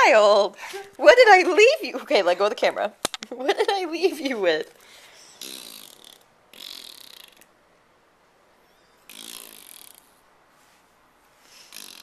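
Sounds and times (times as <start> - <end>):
blown raspberries with lips: 5.2 - 7.4.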